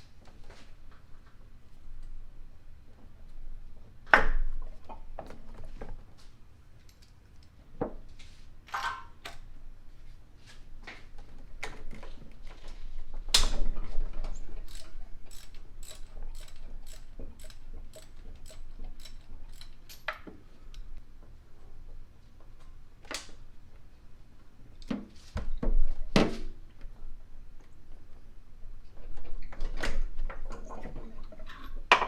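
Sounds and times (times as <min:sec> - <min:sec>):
ratchet wrench clicking: 0:14.7 - 0:20.0.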